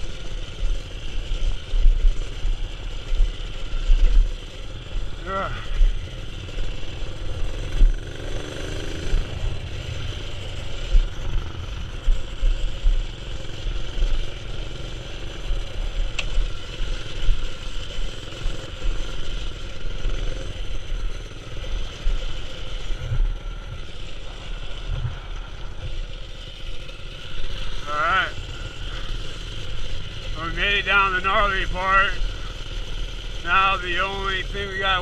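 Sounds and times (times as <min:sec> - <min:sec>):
small engine running: 0:00.0 - 0:35.0
wind rumble on microphone: 0:24.8 - 0:26.0.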